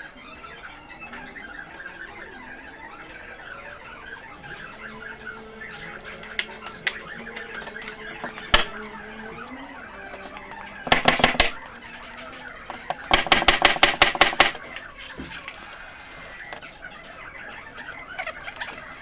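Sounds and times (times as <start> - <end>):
hammer blows on sheet metal: 10.9 - 11.6.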